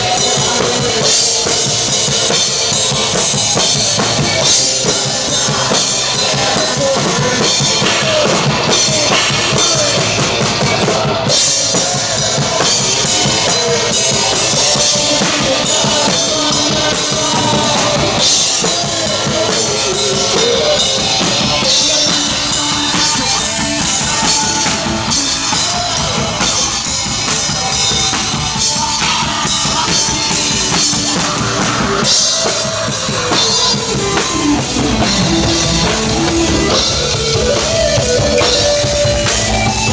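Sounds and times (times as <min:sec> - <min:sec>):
drum kit pounding: 0:00.0 - 0:39.9
heavy rock band playing: 0:00.0 - 0:39.9.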